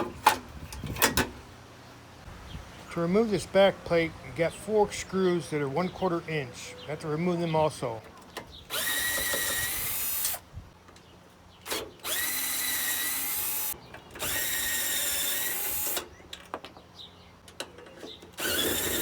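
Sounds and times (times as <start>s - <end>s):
power drill driving screws: 8.7s - 10.4s, 11.7s - 16.1s, 18.4s - 19.0s.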